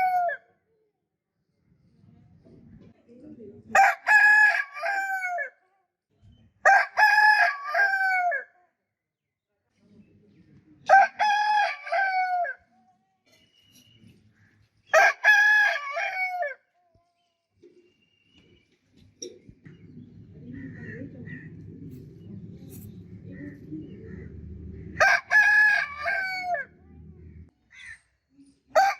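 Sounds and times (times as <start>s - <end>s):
rooster crowing: 3.8s - 5.5s, 6.7s - 8.5s, 15.0s - 16.6s, 23.8s - 26.7s.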